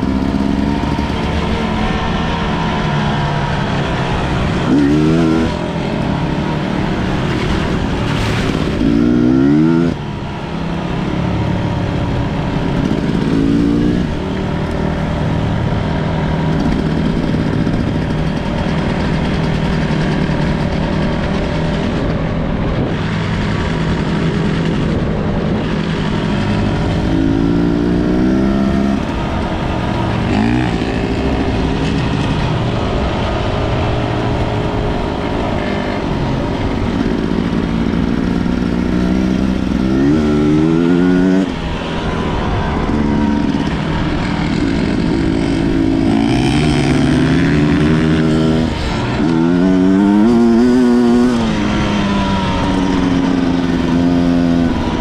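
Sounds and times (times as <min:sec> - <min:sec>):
motorcycle engine revving under load: 0:00.0 - 0:55.0.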